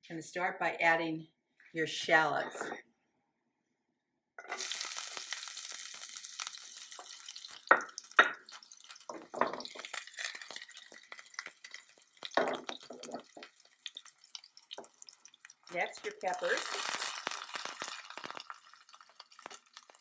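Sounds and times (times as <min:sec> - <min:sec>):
shallots sizzling in hot oil: 0:04.5 - 0:20.0.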